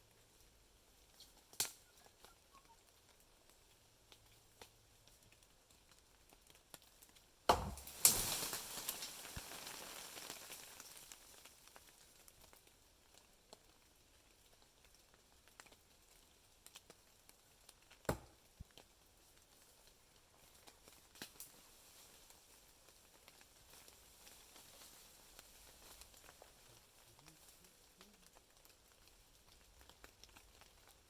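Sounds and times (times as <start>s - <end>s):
branches and twigs crashing: 7.5s - 11.4s.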